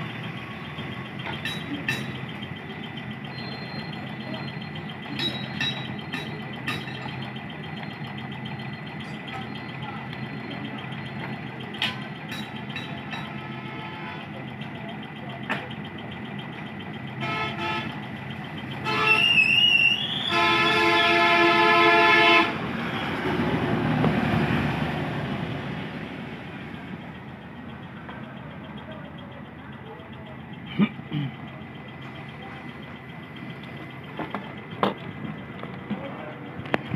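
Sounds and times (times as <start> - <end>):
traffic hum: 0.0 - 36.9
vehicle horns honking: 13.2 - 14.3, 17.2 - 18.0, 18.7 - 22.6
vehicle passing: 22.5 - 27.1.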